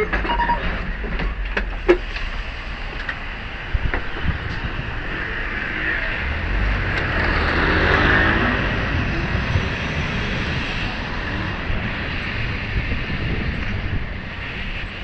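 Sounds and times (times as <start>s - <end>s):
vehicle passing by: 4.2s - 13.4s.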